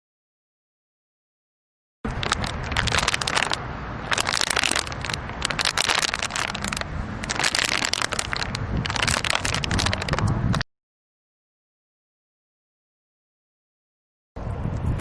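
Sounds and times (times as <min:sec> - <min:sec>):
dense crackling and crunching: 0:02.0 - 0:10.6.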